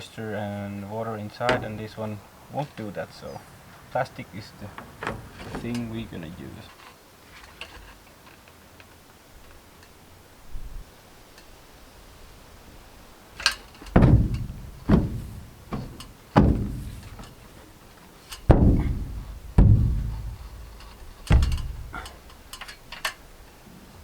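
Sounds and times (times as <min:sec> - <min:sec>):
knocks on sheet-metal van body: 0:01.5 - 0:02.0, 0:04.7 - 0:06.3, 0:13.4 - 0:22.7.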